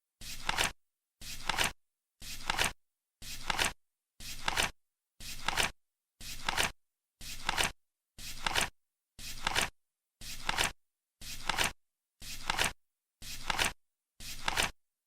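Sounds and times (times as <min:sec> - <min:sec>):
flip clock card flipping: 0:09.4 - 0:09.7, 0:11.4 - 0:11.7, 0:13.4 - 0:14.7.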